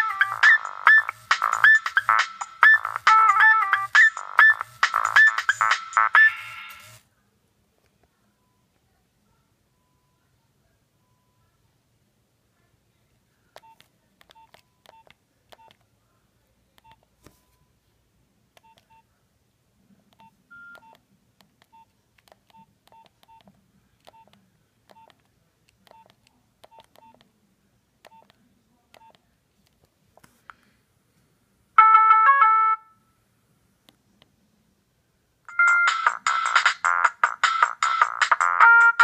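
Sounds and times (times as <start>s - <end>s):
phone ringtone: 0.0s - 7.0s, 31.8s - 33.0s, 35.5s - 39.0s
phone key beeps: 13.6s - 15.8s, 18.6s - 19.0s, 20.2s - 21.0s, 21.6s - 25.2s, 25.9s - 27.3s, 28.0s - 28.4s, 29.0s - 29.2s.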